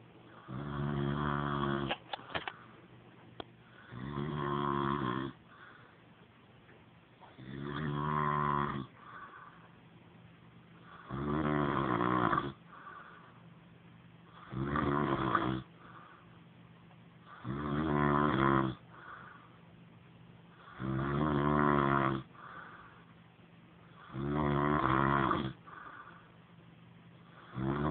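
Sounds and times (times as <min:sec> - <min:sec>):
man snoring: 0:00.4 - 0:02.0, 0:03.8 - 0:05.4, 0:07.3 - 0:09.4, 0:10.8 - 0:13.1, 0:14.3 - 0:15.7, 0:17.3 - 0:19.3, 0:20.6 - 0:22.8, 0:24.0 - 0:26.2, 0:27.4 - 0:27.9.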